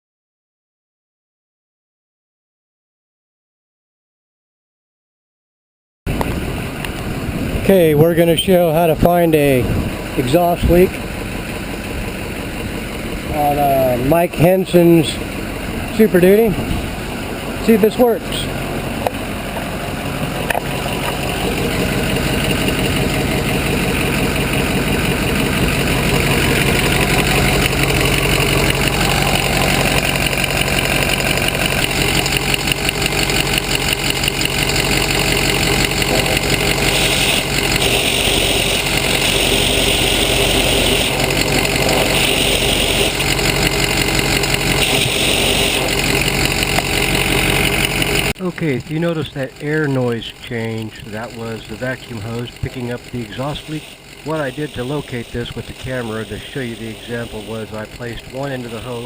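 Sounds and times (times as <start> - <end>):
loud exhaust leak hiss: 35.2 - 48.2, 53.2 - 59.0
rushing air through hose: 36.7 - 43.2, 44.7 - 46.0.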